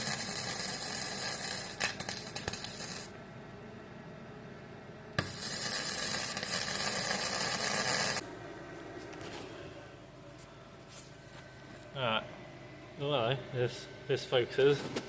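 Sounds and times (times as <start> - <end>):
welder arc crackling and hissing: 0.0 - 3.2, 5.2 - 8.2.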